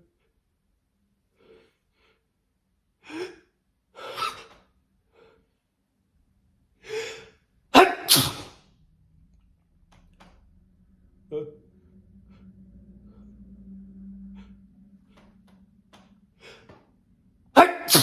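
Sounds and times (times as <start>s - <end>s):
person sneezing: 4.0s - 4.6s, 6.9s - 8.6s, 17.6s - 18.0s.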